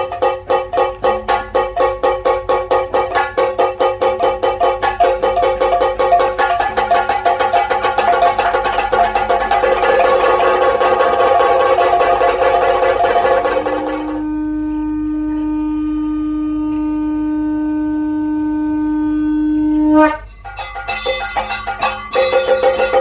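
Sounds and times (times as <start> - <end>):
percussion ensemble playing: 0.0 - 14.2, 20.1 - 23.0
conch shell blown: 10.0 - 23.0
clashing cymbals: 20.0 - 23.0.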